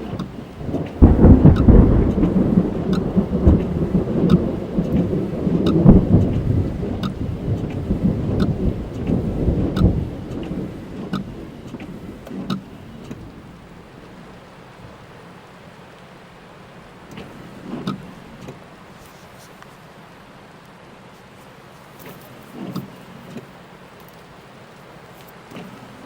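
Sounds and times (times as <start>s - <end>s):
thunder rumbling: 0.0s - 18.8s
raindrops ticking on a car: 0.0s - 19.0s.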